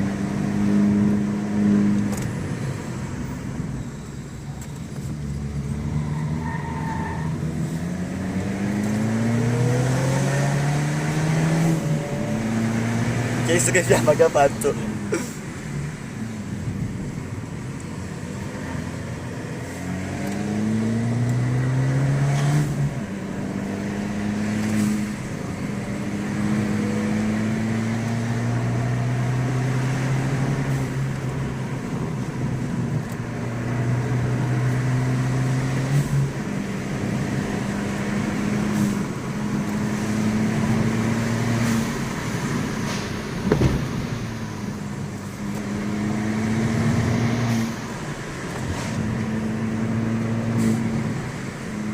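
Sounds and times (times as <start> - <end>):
car engine accelerating through gears: 0.0 - 3.7, 4.6 - 51.9
exhaust pops: 42.8 - 44.2.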